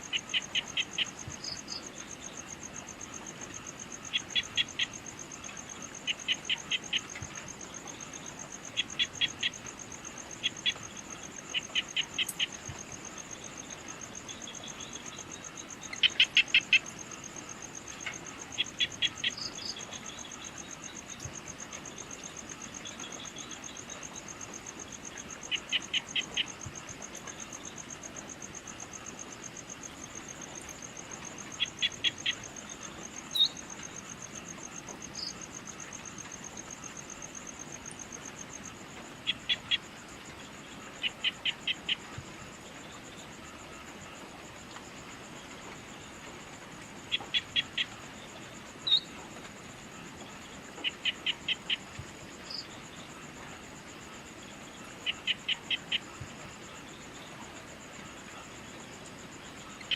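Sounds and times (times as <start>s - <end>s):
four-note insect call: 0.0s - 46.3s, 47.0s - 53.1s, 53.8s - 59.9s
insects trilling: 0.0s - 59.9s
single insect chirps: 27.4s - 39.8s, 48.8s - 49.1s.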